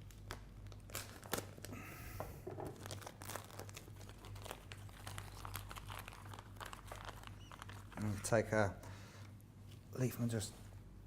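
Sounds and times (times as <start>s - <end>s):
food packet crinkling: 0.0s - 8.4s.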